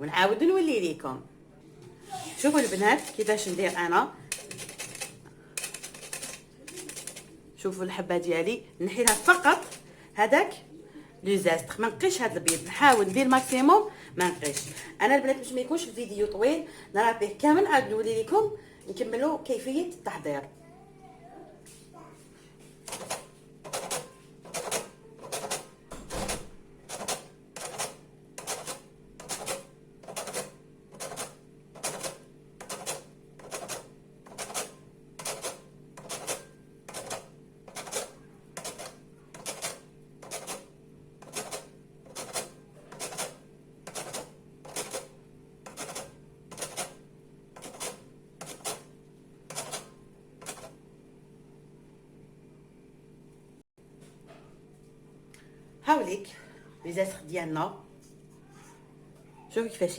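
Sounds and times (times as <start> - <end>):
grater rasping on peel: 2.2 - 3.8, 47.6 - 48.9.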